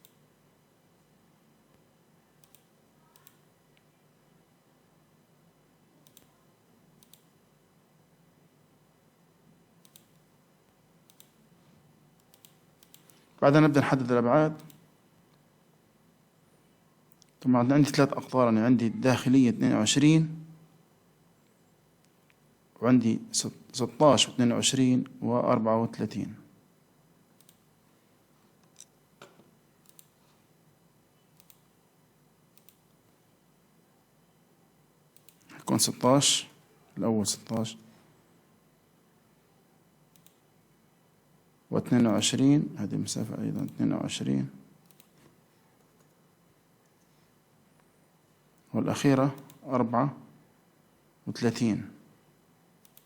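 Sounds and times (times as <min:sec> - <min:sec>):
computer mouse clicking: 0:00.0 - 0:00.2, 0:02.4 - 0:03.9, 0:06.0 - 0:06.4, 0:07.0 - 0:07.3, 0:09.8 - 0:10.3, 0:11.0 - 0:11.4, 0:12.2 - 0:13.3, 0:14.6 - 0:15.4, 0:27.4 - 0:27.7, 0:28.6 - 0:30.4, 0:31.3 - 0:31.7, 0:32.5 - 0:33.1, 0:35.2 - 0:35.6, 0:40.1 - 0:40.4, 0:44.8 - 0:46.2, 0:49.4 - 0:49.6, 0:52.8 - 0:53.0
faint steady hiss: 0:00.0 - 0:53.0.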